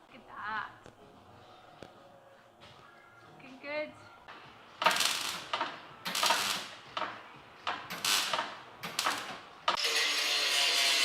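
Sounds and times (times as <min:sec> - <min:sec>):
electric welder arcing: 0:04.8 - 0:11.0.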